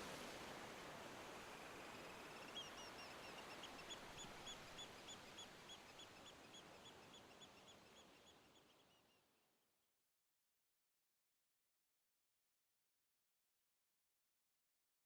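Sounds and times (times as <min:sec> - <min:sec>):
soft even hiss: 0:00.0 - 0:08.6.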